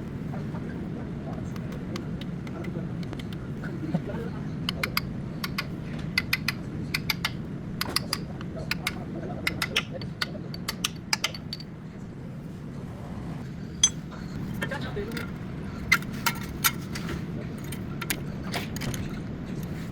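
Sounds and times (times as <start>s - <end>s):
steady low hum: 0.0s - 19.9s
metallic clicks of hand tools: 4.7s - 11.7s, 15.1s - 19.2s.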